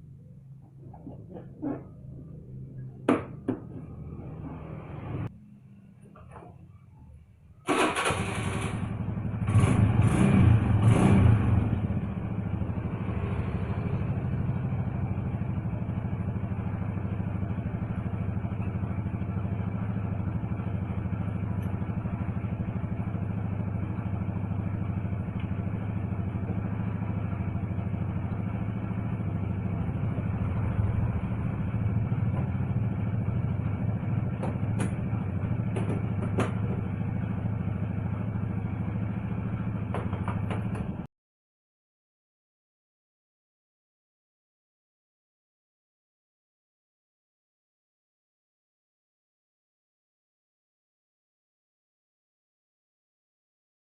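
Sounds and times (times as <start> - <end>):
engine revving and idling: 7.7 - 41.1.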